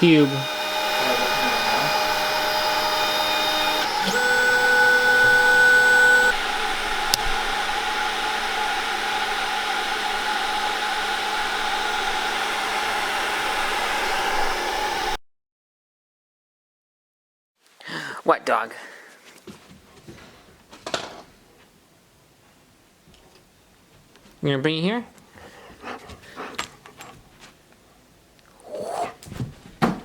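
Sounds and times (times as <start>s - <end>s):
printer fan whirring: 0.0s - 15.2s
stepper motor tones: 0.0s - 15.2s.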